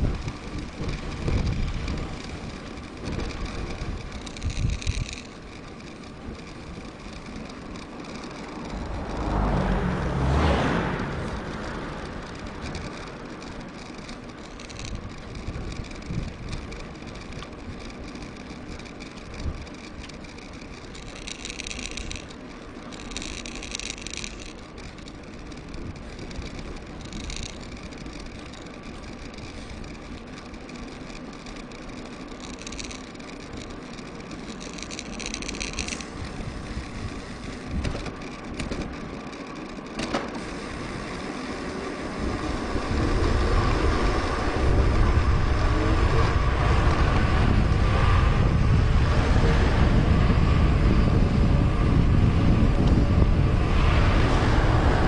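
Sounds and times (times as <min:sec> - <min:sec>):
wind buffeting microphone: 0:00.0 - 0:22.4, 0:34.2 - 0:39.2, 0:40.4 - 0:55.0
bike tyres rolling: 0:00.0 - 0:55.0.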